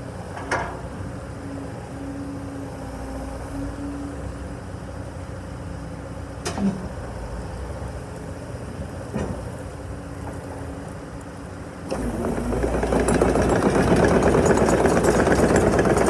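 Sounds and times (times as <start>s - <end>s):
excavator diesel engine running: 11.9s - 16.0s.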